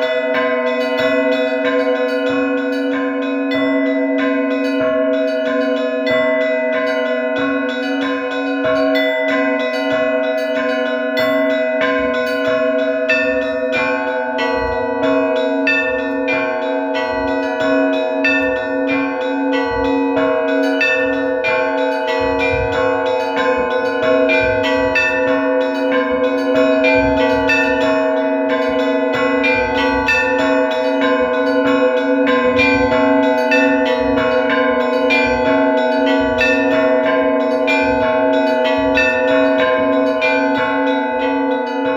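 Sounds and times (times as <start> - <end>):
deep church bell: 0.0 - 41.9
mid-pitched bell: 0.0 - 41.9
small high bells striking: 0.0 - 41.9.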